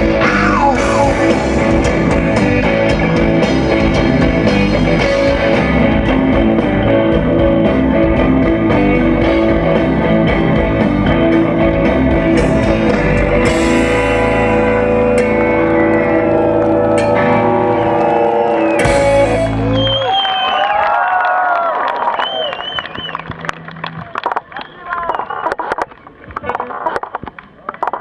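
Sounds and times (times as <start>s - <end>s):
rock band playing live: 0.0s - 20.2s.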